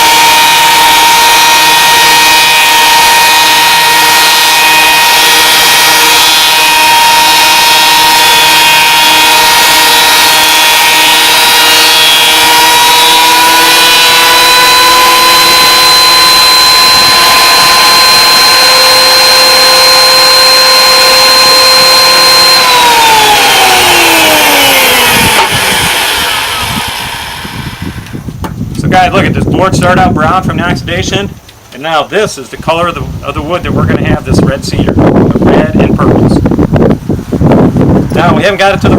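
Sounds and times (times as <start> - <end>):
thickness planer whining: 0.0 - 28.9.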